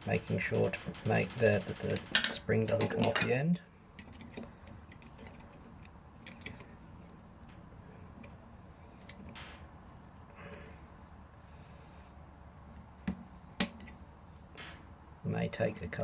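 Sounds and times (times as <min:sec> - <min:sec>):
screwdriver metallic clicks and scraping: 0:01.1 - 0:03.3.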